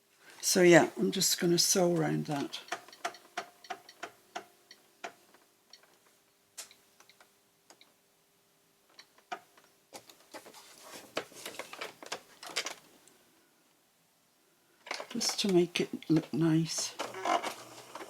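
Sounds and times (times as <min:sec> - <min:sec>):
sewing machine clicks and taps: 0:02.7 - 0:05.2.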